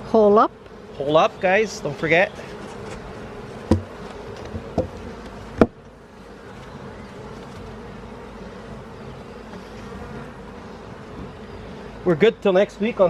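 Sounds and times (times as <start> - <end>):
bees buzzing: 0.0 - 13.0
short knocks: 3.7 - 5.8.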